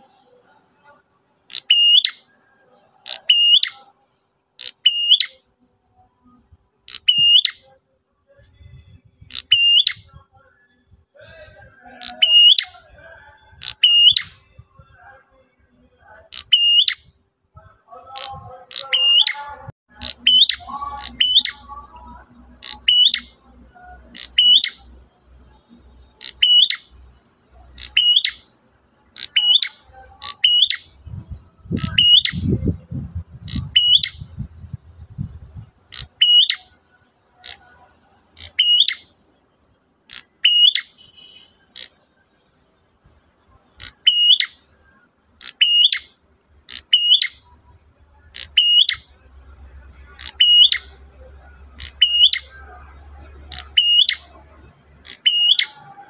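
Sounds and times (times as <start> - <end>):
songbird high downward call: 6.9 - 7.7, 18.2 - 22.0, 29.2 - 34.5.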